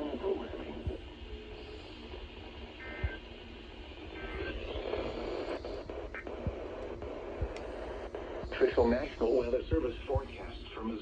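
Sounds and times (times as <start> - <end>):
radio static hiss: 0.0 - 11.0.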